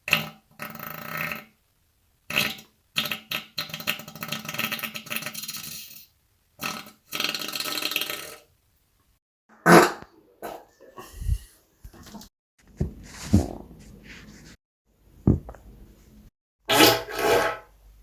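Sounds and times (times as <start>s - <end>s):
person farting: 0.0s - 1.5s, 2.3s - 5.2s, 6.6s - 8.5s, 9.5s - 12.1s.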